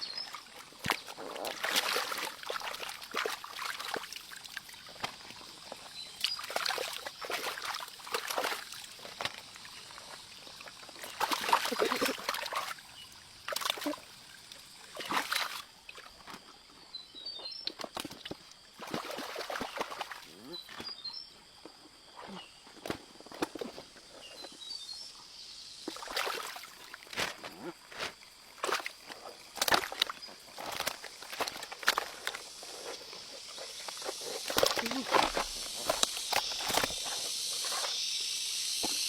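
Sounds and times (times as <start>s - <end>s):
water splashing and sloshing: 0.0s - 16.9s, 17.6s - 24.5s, 25.2s - 39.0s.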